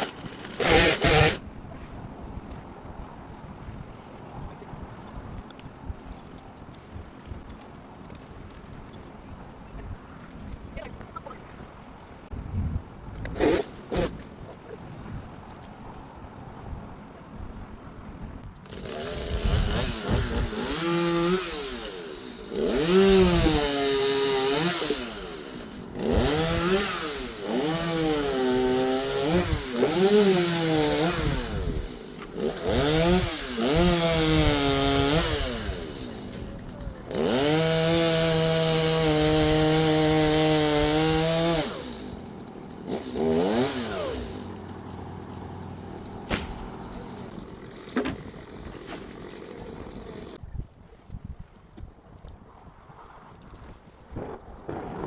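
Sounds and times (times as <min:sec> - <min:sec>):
chainsaw revving: 0:00.0 - 0:01.4, 0:13.3 - 0:14.2, 0:18.6 - 0:50.4.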